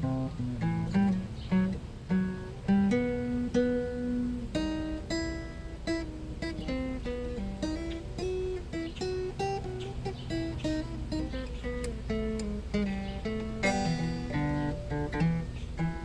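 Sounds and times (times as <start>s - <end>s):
steady bass: 0.0s - 2.4s
acoustic guitar strumming: 0.0s - 16.0s.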